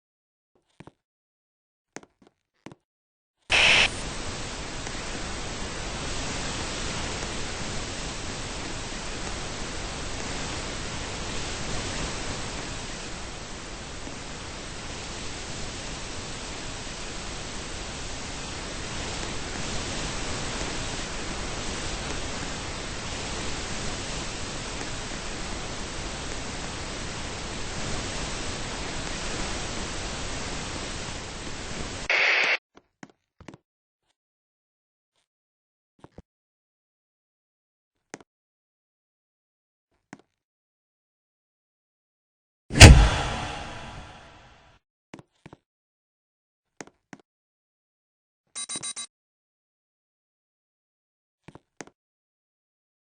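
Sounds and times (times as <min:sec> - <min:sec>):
toy water spray hissing: 0:03.5 - 0:04.0
steady hiss: 0:03.5 - 0:32.6.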